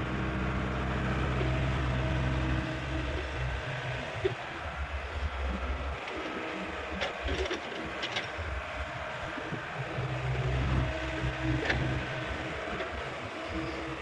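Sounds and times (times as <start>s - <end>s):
excavator diesel engine running: 0.0s - 14.0s
humming tone: 9.8s - 14.0s.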